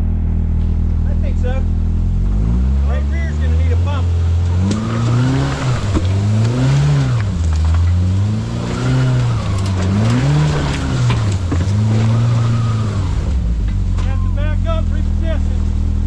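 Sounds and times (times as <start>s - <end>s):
off-road engine revving: 0.0s - 16.0s.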